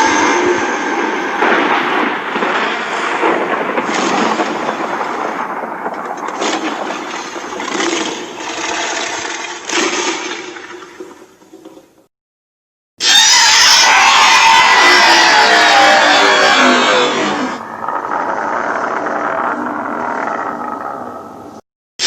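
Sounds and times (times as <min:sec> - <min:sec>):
crackling storm rush: 0:00.0 - 0:09.8, 0:13.9 - 0:21.6.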